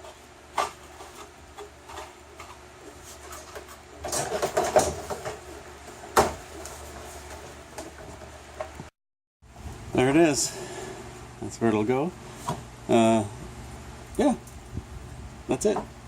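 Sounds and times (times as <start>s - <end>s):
rustling and scraping of parts: 0.0s - 8.9s.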